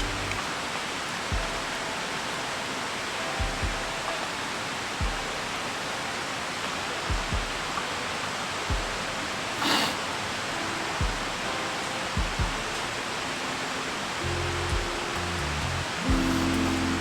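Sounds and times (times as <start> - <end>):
soft low thumps: 16.1 - 16.8.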